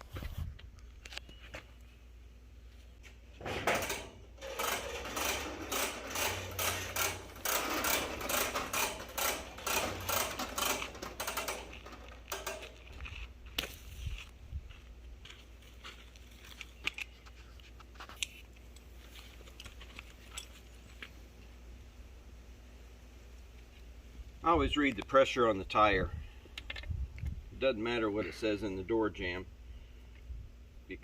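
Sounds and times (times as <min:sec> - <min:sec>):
small air compressor rattling: 0:03.4 - 0:13.2.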